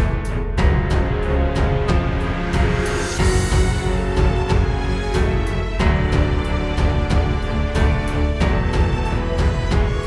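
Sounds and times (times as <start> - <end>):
music with heavy bass beat: 0.0 - 10.0.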